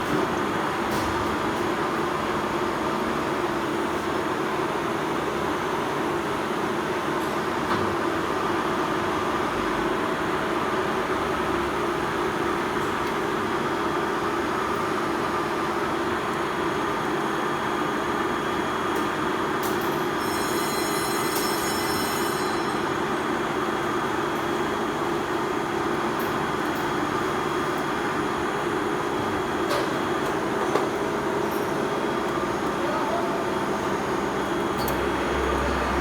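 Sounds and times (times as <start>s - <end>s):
high-pitched ringing: 20.2s - 23.6s.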